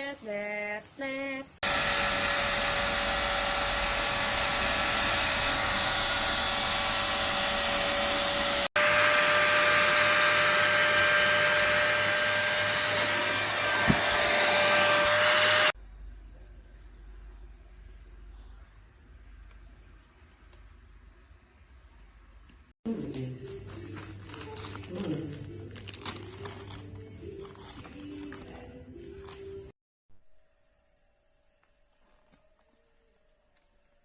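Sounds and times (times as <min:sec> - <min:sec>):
vacuum cleaner running with high whine: 0:01.6 - 0:15.8.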